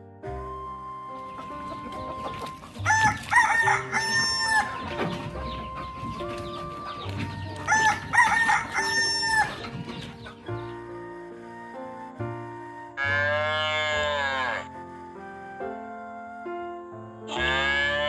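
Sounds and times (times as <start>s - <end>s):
background music: 0.0s - 18.0s
rooster crowing: 1.5s - 4.9s, 6.7s - 9.7s.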